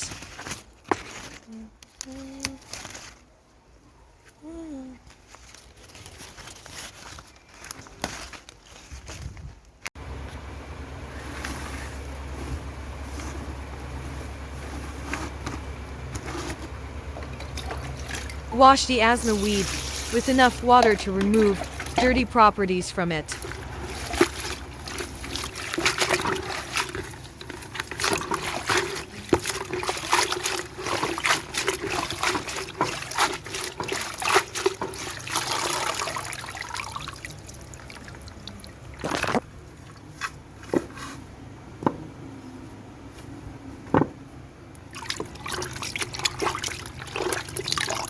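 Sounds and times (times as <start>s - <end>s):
water splashing and trickling: 17.0s - 22.3s, 23.2s - 40.4s, 44.8s - 48.0s.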